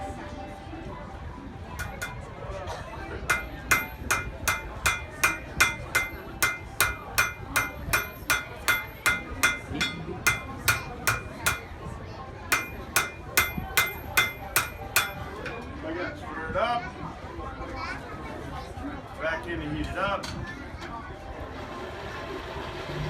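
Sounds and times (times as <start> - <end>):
hammer striking iron on anvil: 1.8 - 2.3, 3.3 - 11.8, 12.5 - 15.6.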